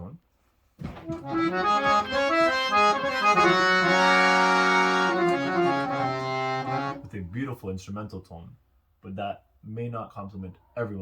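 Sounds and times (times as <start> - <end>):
harmonium chords and melody: 1.0 - 7.1.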